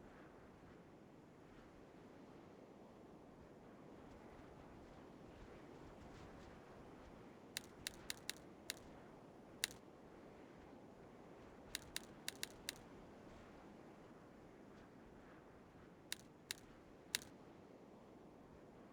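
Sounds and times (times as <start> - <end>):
sharp light clicks: 7.6 - 8.9, 11.8 - 12.8, 16.1 - 17.3.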